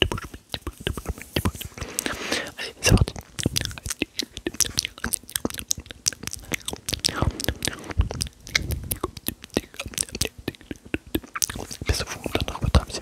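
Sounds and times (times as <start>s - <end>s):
tongue clicks: 0.0s - 13.0s
lip smacks and wet pops: 2.8s - 12.8s
breathy swishes: 6.4s - 9.2s.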